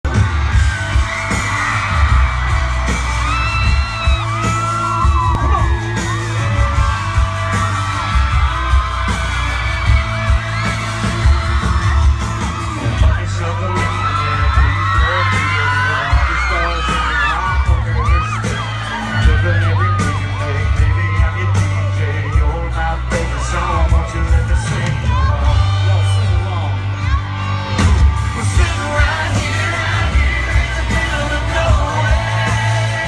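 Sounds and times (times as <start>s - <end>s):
crowd whooping and yelling: 0.0s - 33.0s
live country band playing: 0.0s - 33.0s
person singing: 28.3s - 33.0s.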